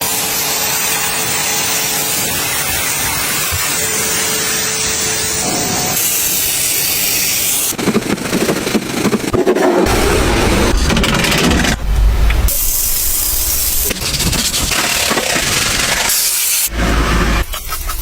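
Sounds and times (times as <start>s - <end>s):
pressure washer jet hissing: 0.0s - 7.8s, 12.5s - 16.7s.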